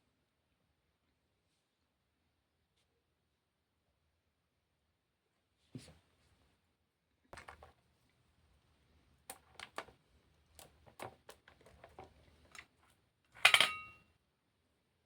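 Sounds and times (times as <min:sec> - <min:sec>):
ringing clattering clink: 0:13.4 - 0:14.0.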